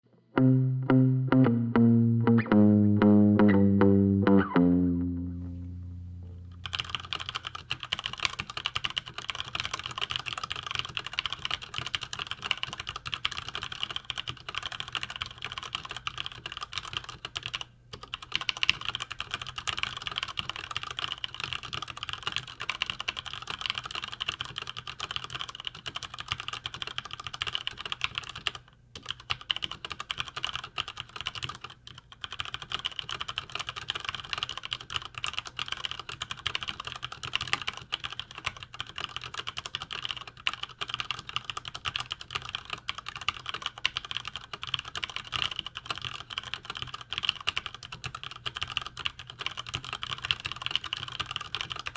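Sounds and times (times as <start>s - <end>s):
music intro: 0.4s - 6.8s
fast mechanical keyboard typing: 6.6s - 51.9s.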